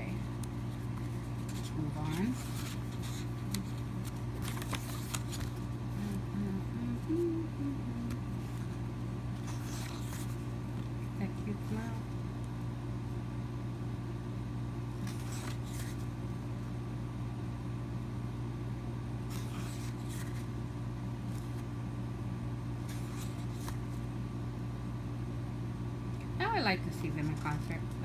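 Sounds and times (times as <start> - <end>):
steady low hum: 0.0 - 28.0
paper pages rustling: 0.1 - 6.2, 9.4 - 11.9, 15.0 - 16.1, 19.3 - 20.5, 22.8 - 24.0.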